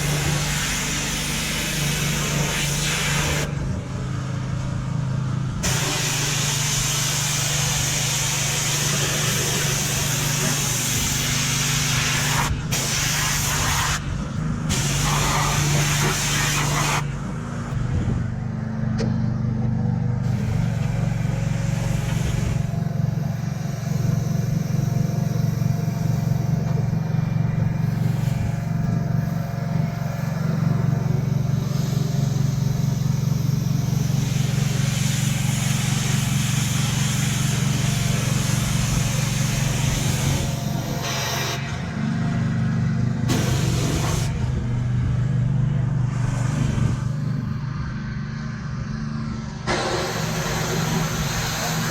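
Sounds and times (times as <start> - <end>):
water spray hissing: 0.0 - 3.5, 5.6 - 14.1, 14.7 - 17.1, 20.3 - 41.8, 43.3 - 44.4, 49.7 - 51.9
pressure washer motor drone: 0.0 - 51.9.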